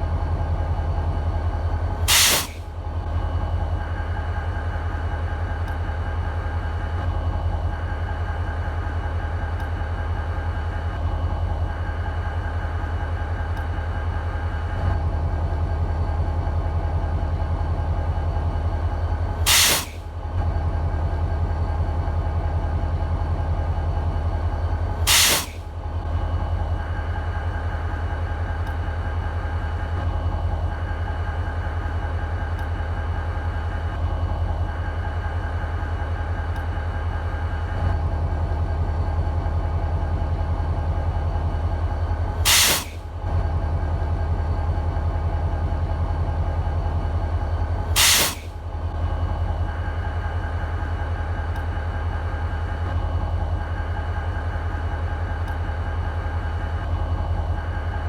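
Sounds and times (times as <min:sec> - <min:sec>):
diesel locomotive engine idling: 0:00.0 - 0:58.0
loud air hisses: 0:02.1 - 0:02.6, 0:19.4 - 0:20.0, 0:25.0 - 0:25.6, 0:42.4 - 0:43.0, 0:48.0 - 0:48.6.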